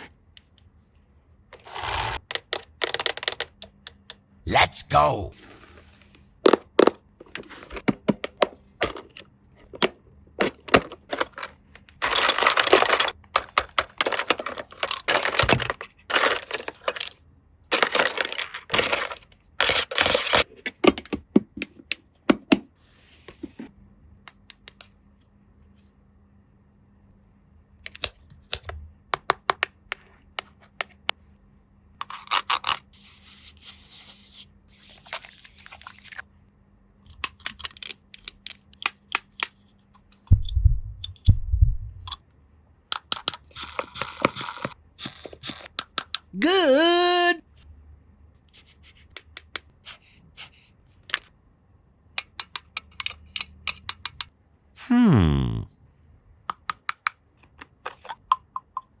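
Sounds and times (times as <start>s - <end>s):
plastic toy parts clicking: 1.6s - 4.2s, 7.8s - 21.2s, 37.1s - 39.6s, 42.9s - 46.3s, 52.2s - 54.3s
packaging crinkling and tearing: 11.1s - 13.2s.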